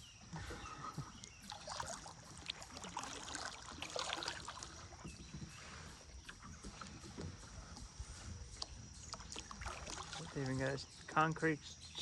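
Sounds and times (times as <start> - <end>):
water dripping off paddle blades: 0.1 - 12.0
kayak paddle dipping into water: 0.5 - 11.4
small splashes: 1.2 - 5.2, 9.0 - 11.3.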